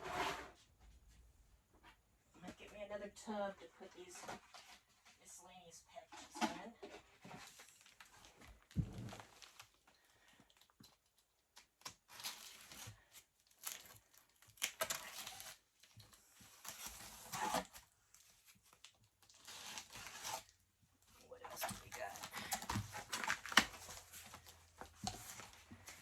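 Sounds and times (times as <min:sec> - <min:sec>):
plastic packaging crinkling: 0:07.5 - 0:11.2, 0:21.4 - 0:26.0.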